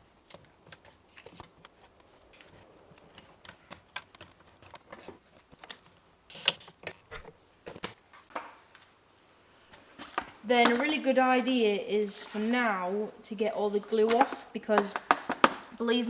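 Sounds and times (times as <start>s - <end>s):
clamps clicking and knocking: 5.5s - 8.0s.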